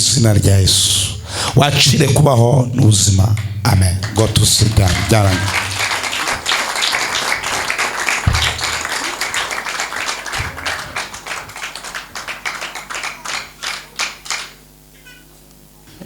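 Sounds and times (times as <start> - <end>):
congregation clapping: 3.2 - 14.8.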